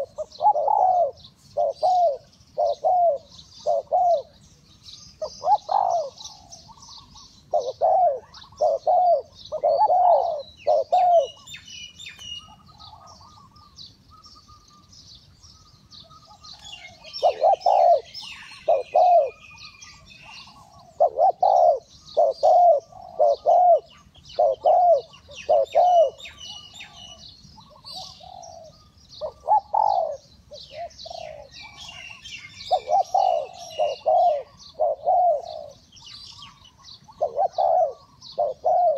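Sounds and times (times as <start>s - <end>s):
dove cooing: 0.0s - 14.9s, 16.0s - 38.9s
small birds chirping faintly: 0.0s - 38.9s.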